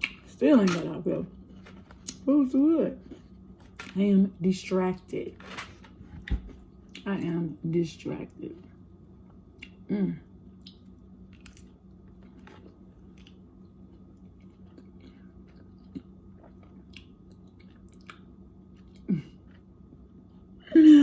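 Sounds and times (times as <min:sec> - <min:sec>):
steady low hum: 0:00.0 - 0:21.0
person humming mm: 0:09.9 - 0:10.3
person chewing food: 0:10.6 - 0:20.6.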